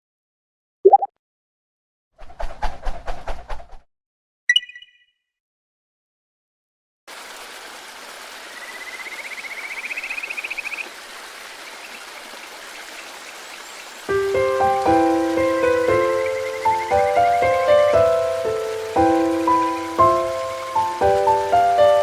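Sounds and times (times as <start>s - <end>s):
mountain stream rushing: 7.1s - 22.0s.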